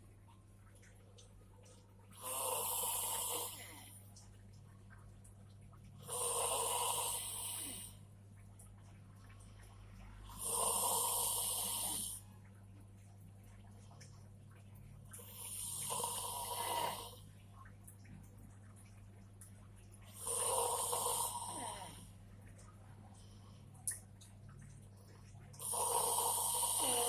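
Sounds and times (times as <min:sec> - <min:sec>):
faint low hum: 0:00.0 - 0:27.0
person snoring loudly: 0:02.2 - 0:03.8, 0:06.1 - 0:08.0, 0:10.3 - 0:12.2, 0:15.4 - 0:17.2, 0:20.2 - 0:22.0, 0:25.6 - 0:27.0.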